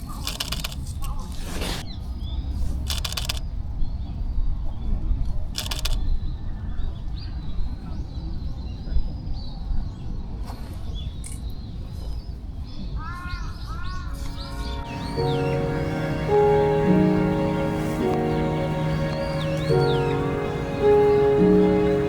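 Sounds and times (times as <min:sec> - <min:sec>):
small birds chirping: 0:13.2 - 0:22.0.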